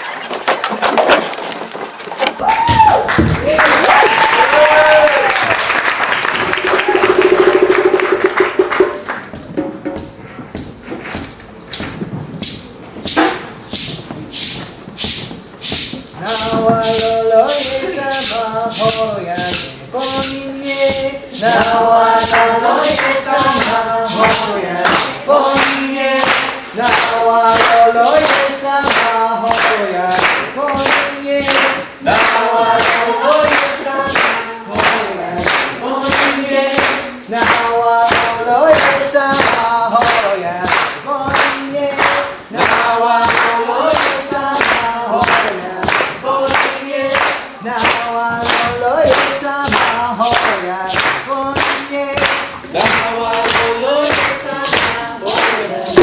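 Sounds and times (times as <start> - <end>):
hands clapping on a beat: 2.4 - 9.9, 15.2 - 56.0
group singing a chant: 16.2 - 56.0.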